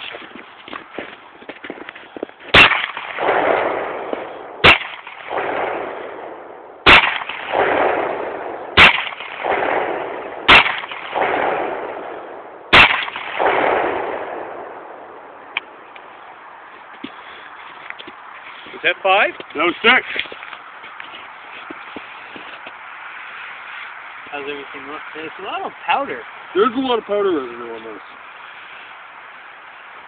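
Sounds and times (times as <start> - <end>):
revolver shots: 6.8 - 14.6.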